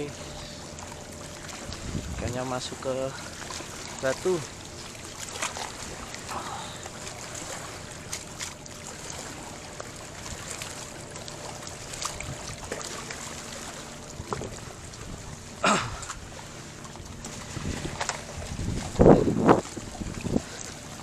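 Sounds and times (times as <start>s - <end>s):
seawater washing and trickling: 0.0s - 21.0s.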